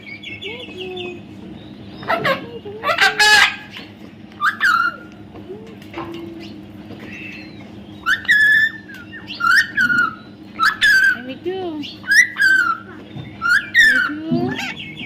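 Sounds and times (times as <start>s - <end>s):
baby parrot calling: 2.0s - 5.2s, 7.1s - 15.0s.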